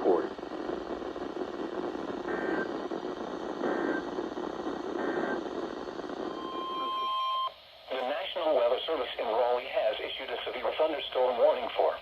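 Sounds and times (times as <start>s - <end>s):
warbling data bursts: 0.0s - 7.5s
receiver static: 0.0s - 12.0s.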